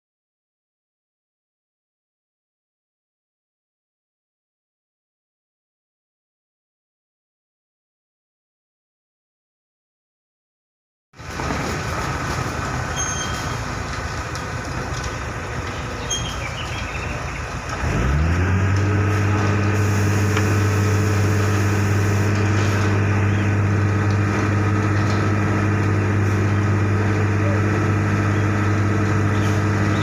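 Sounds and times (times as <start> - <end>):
diesel truck engine: 11.2 - 30.0
machinery noise: 11.2 - 30.0.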